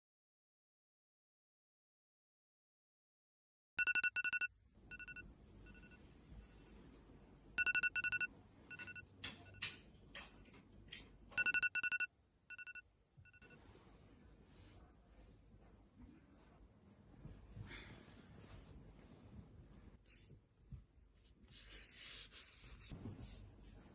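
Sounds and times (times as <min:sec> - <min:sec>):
telephone double ring: 0:03.8 - 0:06.0, 0:11.4 - 0:13.5.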